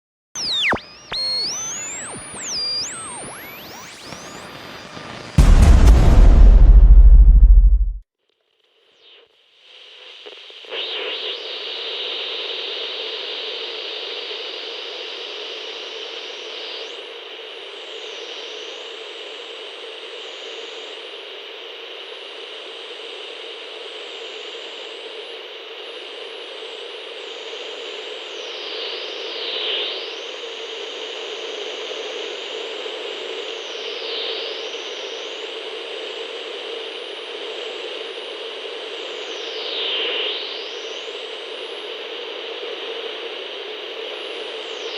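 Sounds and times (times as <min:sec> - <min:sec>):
high whistling tones: 0:00.4 - 0:05.7
radio static hiss: 0:00.4 - 0:08.0, 0:09.7 - 0:16.0.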